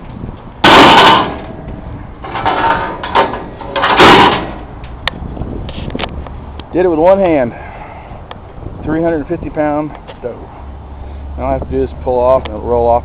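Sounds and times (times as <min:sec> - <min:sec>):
metal stove scraping and sliding: 0:02.2 - 0:04.6.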